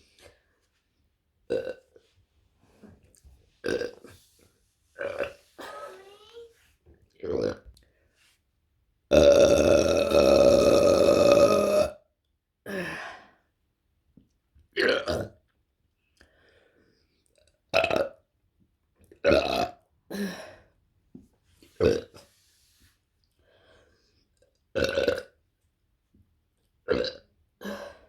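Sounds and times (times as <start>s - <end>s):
woman burping: 5.0s - 6.0s, 9.1s - 12.0s, 14.8s - 15.4s, 19.2s - 20.5s, 24.8s - 25.3s.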